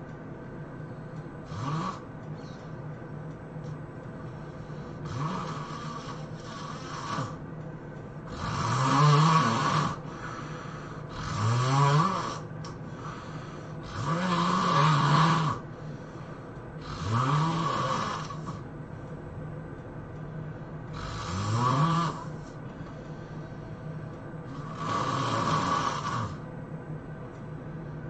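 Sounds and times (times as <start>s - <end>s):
person snoring loudly: 1.4s - 2.0s, 5.0s - 7.4s, 8.3s - 15.7s, 16.8s - 18.6s, 20.9s - 22.6s, 24.5s - 26.4s.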